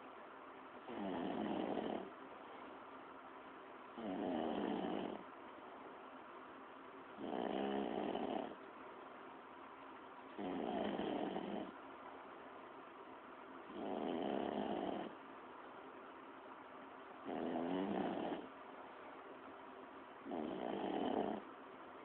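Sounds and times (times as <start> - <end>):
person snoring: 0.9 - 2.1, 4.0 - 5.2, 7.2 - 8.6, 10.4 - 11.7, 13.8 - 15.1, 17.3 - 18.5, 20.3 - 21.4.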